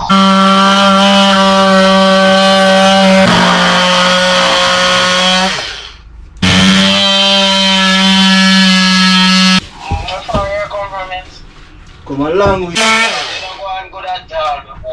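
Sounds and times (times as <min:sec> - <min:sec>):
power tool motor running: 0:00.0 - 0:09.6, 0:12.7 - 0:13.6.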